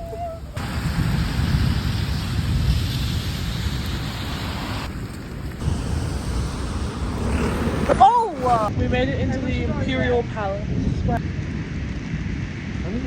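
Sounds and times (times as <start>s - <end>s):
heavy rain pouring: 0.6s - 8.7s
low rumble on microphone: 5.0s - 9.8s.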